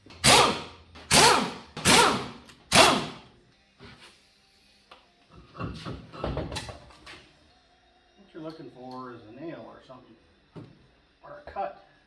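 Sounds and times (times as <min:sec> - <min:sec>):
impact wrench spinning lug nuts: 0:00.2 - 0:03.2.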